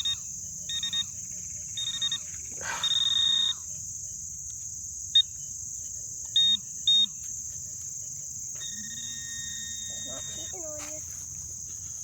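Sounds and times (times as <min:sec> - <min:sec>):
insects droning: 0:00.0 - 0:12.0
metal detector beeping: 0:08.6 - 0:10.8.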